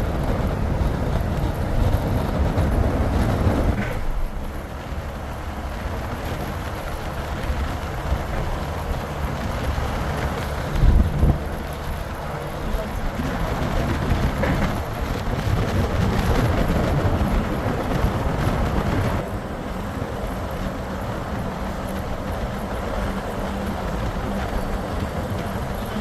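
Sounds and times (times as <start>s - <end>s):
vehicle running rumble: 0.0s - 26.0s.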